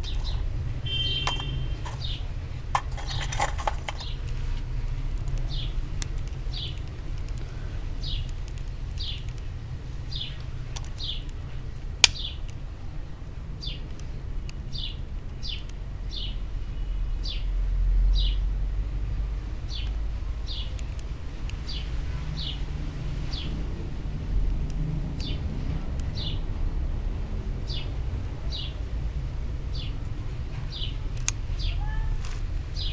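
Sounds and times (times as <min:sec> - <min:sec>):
bird chirping: 0:00.0 - 0:04.3, 0:05.3 - 0:09.4, 0:10.1 - 0:11.3, 0:12.0 - 0:12.5, 0:13.6 - 0:18.5, 0:21.6 - 0:22.6.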